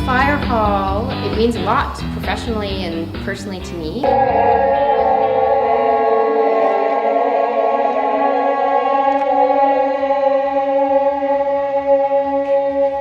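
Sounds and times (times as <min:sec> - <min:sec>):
sustained drone music: 0:04.0 - 0:13.0.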